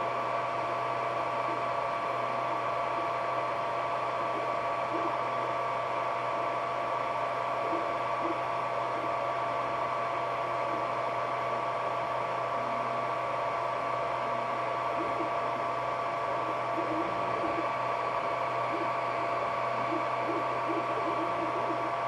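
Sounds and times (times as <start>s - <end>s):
printer fans and motors whirring: 0.0s - 22.0s
low hum: 12.2s - 22.0s.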